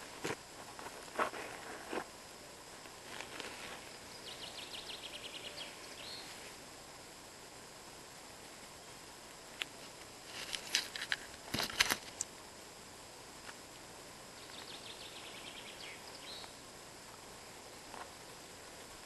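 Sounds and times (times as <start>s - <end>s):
faint bird song: 3.6s - 6.6s, 14.2s - 18.8s.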